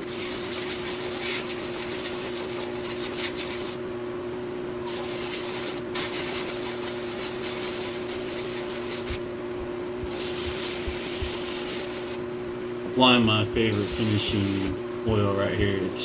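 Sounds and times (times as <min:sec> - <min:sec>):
sanding on wood: 0:00.0 - 0:03.8, 0:04.9 - 0:09.2, 0:10.1 - 0:12.2, 0:13.7 - 0:14.8
machine hum: 0:00.0 - 0:16.0.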